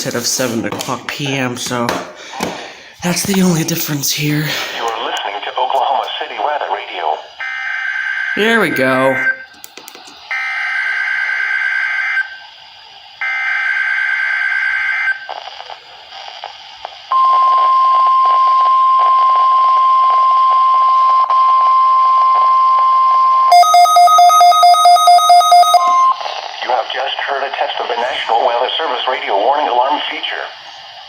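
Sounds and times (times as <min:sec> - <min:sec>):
steady warning alarm tone: 0:07.0 - 0:09.6, 0:10.3 - 0:12.6, 0:13.2 - 0:15.3, 0:17.1 - 0:26.2.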